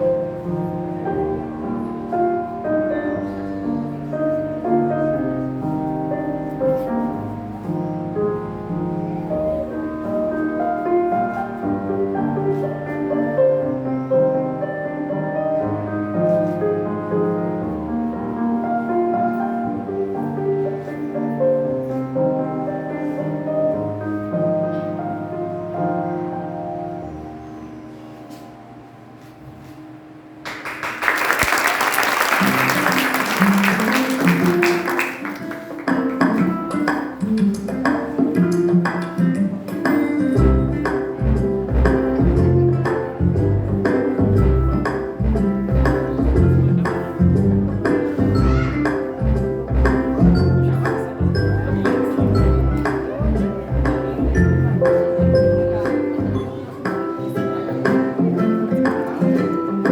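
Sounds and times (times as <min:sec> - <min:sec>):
instrumental melody: 0:32.4 - 0:59.9.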